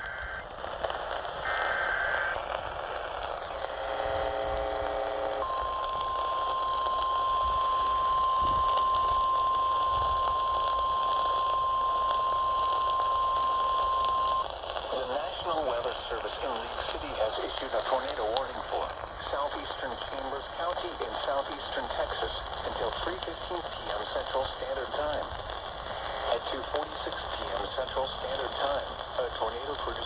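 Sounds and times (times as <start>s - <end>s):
radio hiss: 0.0s - 30.0s
steady alarm tone: 1.4s - 14.4s.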